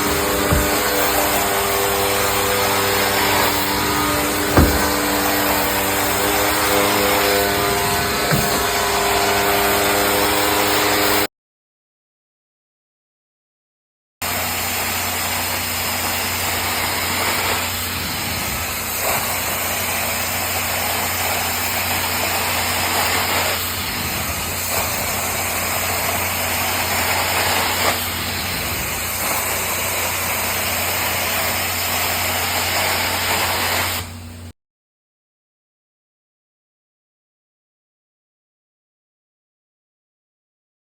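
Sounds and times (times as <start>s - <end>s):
carpet cleaning machine whining: 0.0s - 11.3s, 14.2s - 34.5s.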